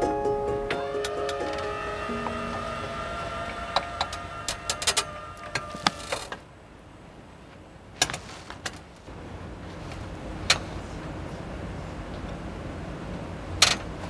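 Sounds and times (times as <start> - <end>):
background music with held notes: 0.0 - 4.8.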